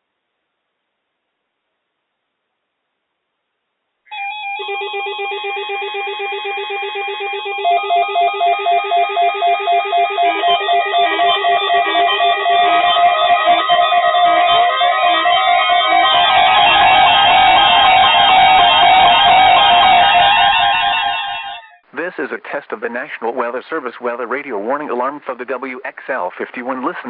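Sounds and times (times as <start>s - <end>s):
electronic alert beeps: 7.3s - 20.2s.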